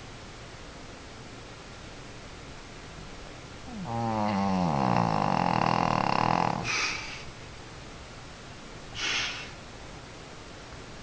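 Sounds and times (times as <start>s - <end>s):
dog snoring: 3.7s - 7.0s
dog breathy puff: 9.0s - 9.6s.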